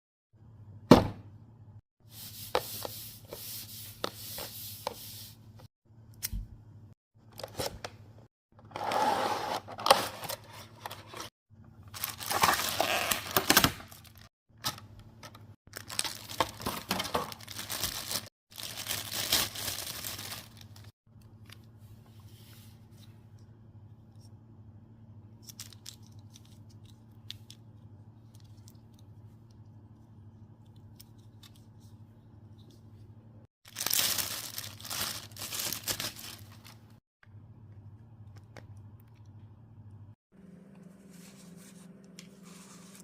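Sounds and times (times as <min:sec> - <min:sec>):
cardboard and plastic tearing: 0:11.9 - 0:14.8, 0:15.7 - 0:20.9, 0:33.7 - 0:36.8.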